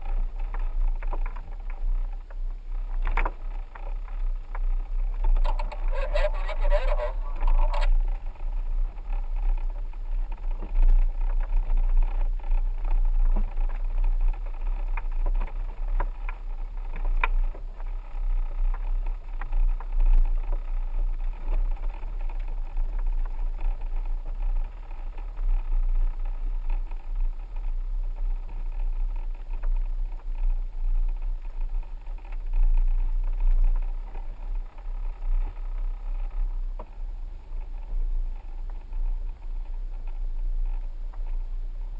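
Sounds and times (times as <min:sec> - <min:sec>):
vehicle engine rumbling: 0:00.0 - 0:41.9.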